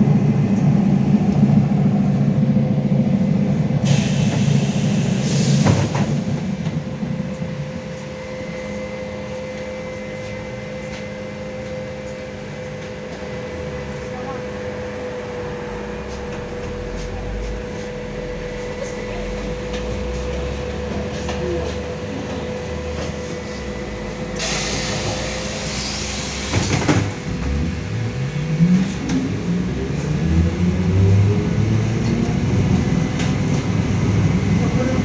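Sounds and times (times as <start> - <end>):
air hiss: 3.9 - 6.3, 24.4 - 26.8.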